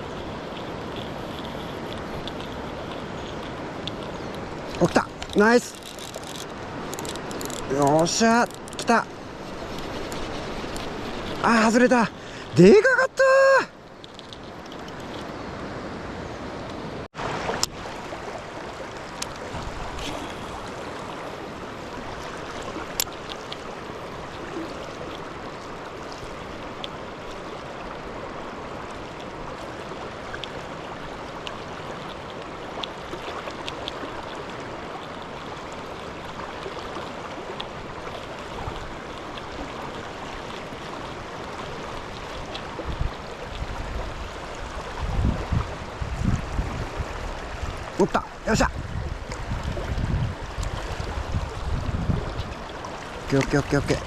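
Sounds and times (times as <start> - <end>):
river water flowing: 0.0 - 54.0
faint ticks: 0.5 - 11.4.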